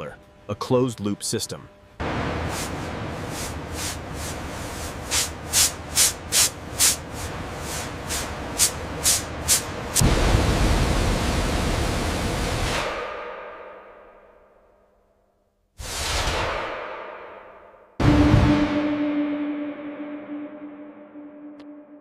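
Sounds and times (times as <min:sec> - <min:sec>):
rushing noise with rumble: 0:02.0 - 0:13.0
steady hissing: 0:02.4 - 0:10.1.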